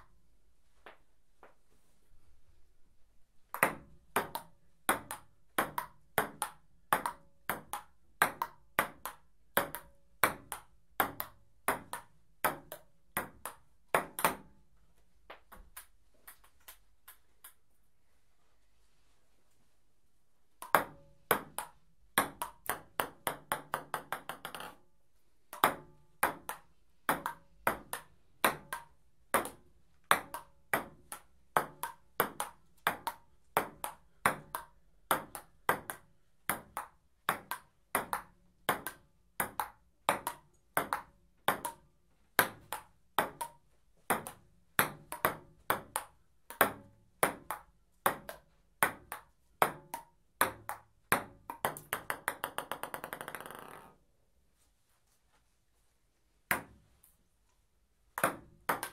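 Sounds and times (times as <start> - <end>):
table tennis rally: 3.5 - 14.6, 20.6 - 24.8, 25.5 - 54.0, 56.5 - 56.8, 58.2 - 58.9
table tennis ball bouncing to rest: 20.6 - 24.8, 42.4 - 54.0.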